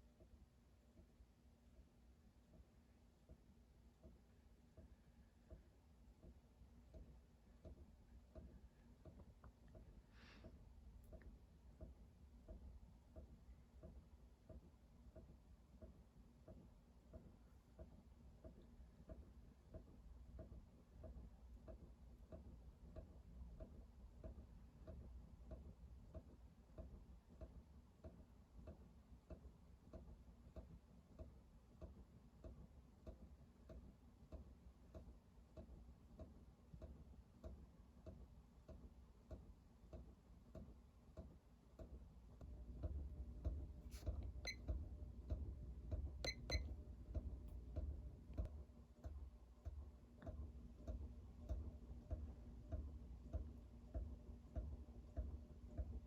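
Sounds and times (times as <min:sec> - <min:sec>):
faint regular ticking: 0:32.4 - 0:55.9.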